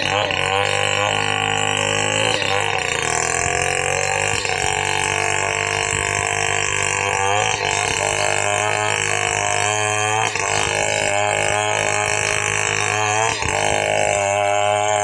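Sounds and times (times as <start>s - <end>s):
chainsaw cutting wood: 0.0s - 15.0s.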